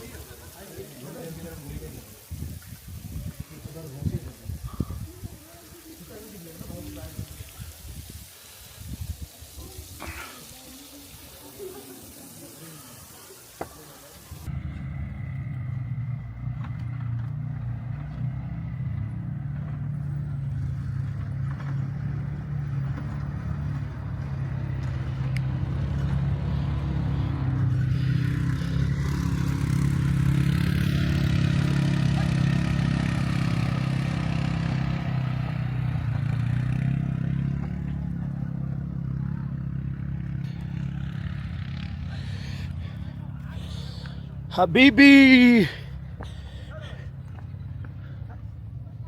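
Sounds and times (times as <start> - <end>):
road noise: 0.0 - 49.0
vehicle engine running: 14.4 - 49.0.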